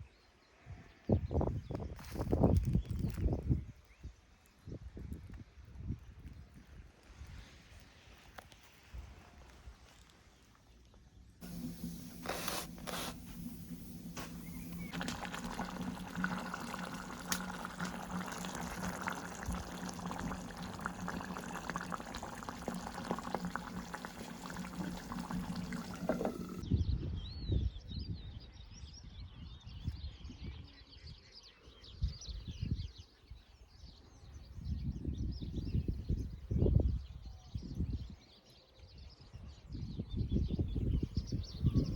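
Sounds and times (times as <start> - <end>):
water pouring and trickling: 11.4 - 26.6.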